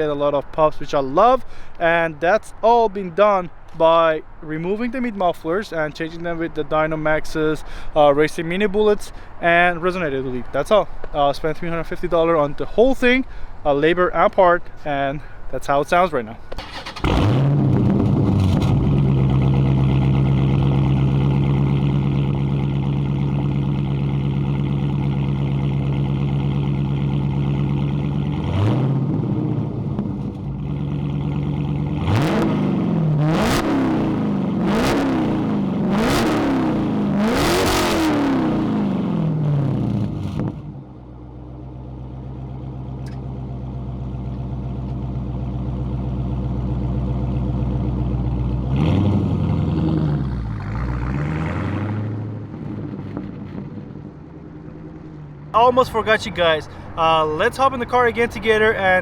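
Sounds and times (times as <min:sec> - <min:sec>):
car engine idling and revving: 0:16.5 - 0:59.0.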